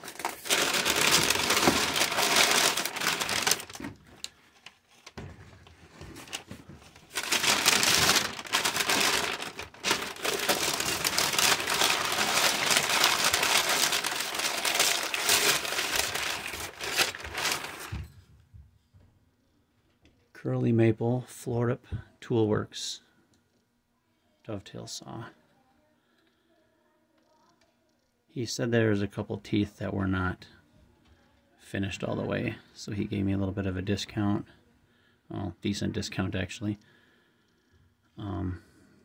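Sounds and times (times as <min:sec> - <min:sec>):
packing material crinkling: 0:00.0 - 0:18.0.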